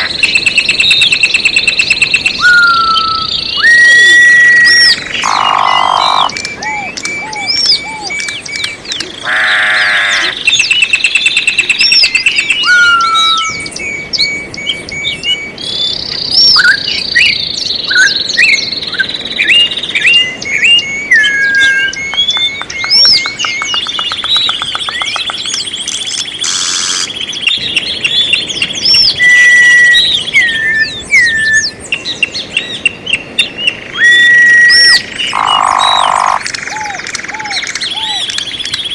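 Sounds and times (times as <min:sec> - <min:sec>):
songbirds singing: 0:00.0 - 0:38.9.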